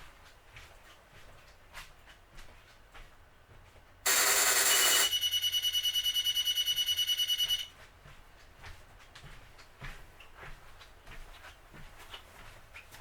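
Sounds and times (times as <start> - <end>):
harsh alarm buzz: 4.1 - 7.7
rapidly pulsing high beep: 4.1 - 7.7.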